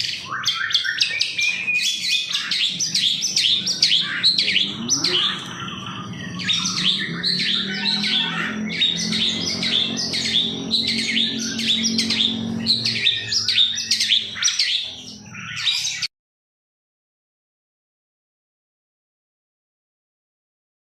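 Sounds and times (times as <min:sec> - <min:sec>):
shrike chattering song: 0:01.3 - 0:16.1.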